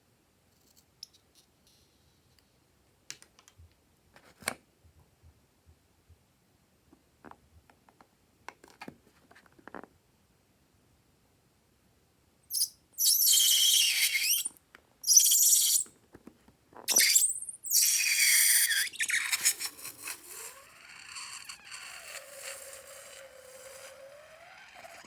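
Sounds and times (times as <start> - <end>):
loud hissing with squeaks: 12.5 - 15.8, 16.9 - 25.0
faint wavering squeal: 16.9 - 25.0.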